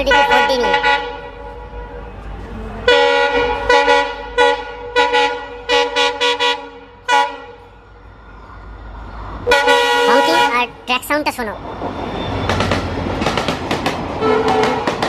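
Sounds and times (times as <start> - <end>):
locomotive horn blasts: 0.0 - 7.7, 9.5 - 10.6, 14.2 - 15.0.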